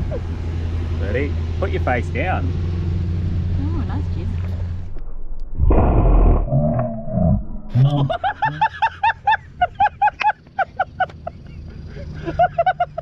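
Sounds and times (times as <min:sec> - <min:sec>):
person laughing hard: 0:07.7 - 0:13.0.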